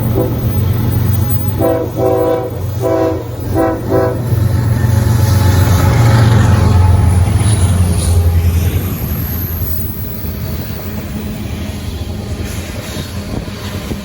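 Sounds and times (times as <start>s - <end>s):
train horn blasts: 0.0s - 0.6s, 1.5s - 4.4s
rail noise: 0.0s - 14.0s.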